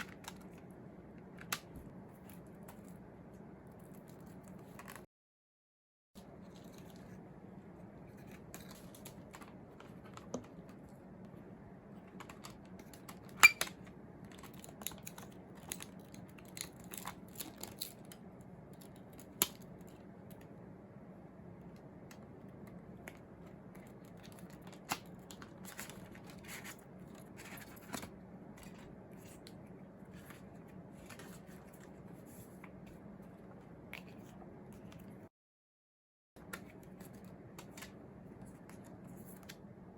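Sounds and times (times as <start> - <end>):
plastic and paper rustling: 23.1 - 33.4.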